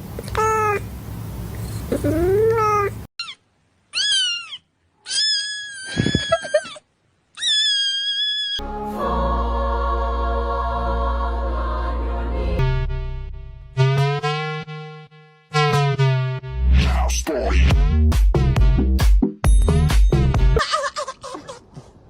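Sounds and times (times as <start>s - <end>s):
cat meowing: 0.3s - 0.8s, 1.9s - 6.8s, 7.4s - 8.6s
music: 8.6s - 20.6s.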